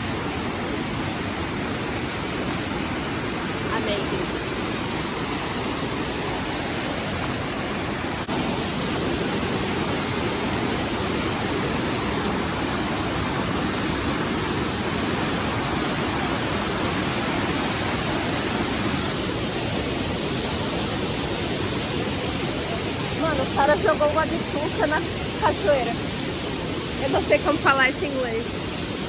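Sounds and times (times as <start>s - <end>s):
waterfall rushing: 0.0s - 29.0s.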